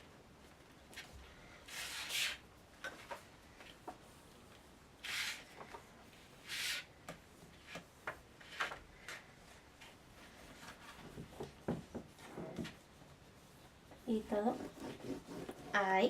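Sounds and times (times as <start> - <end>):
paper being smoothed down: 1.6 - 2.4, 5.0 - 5.5, 6.4 - 6.9.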